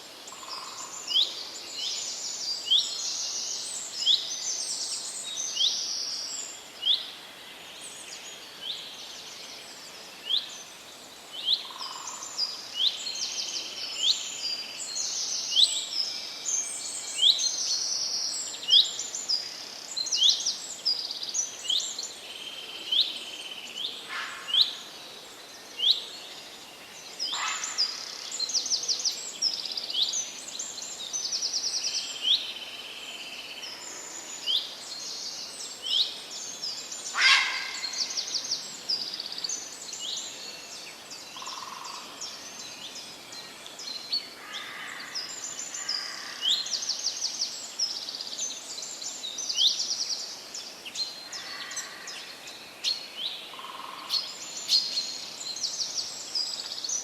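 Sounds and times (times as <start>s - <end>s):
faint steady hiss: 0.0s - 57.0s
songbirds singing: 0.0s - 57.0s
harsh bird calls: 37.1s - 38.2s.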